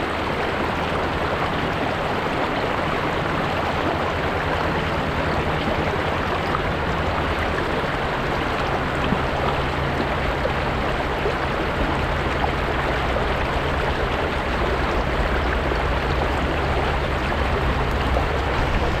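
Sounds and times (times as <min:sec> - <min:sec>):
water rushing over rocks: 0:00.0 - 0:19.0.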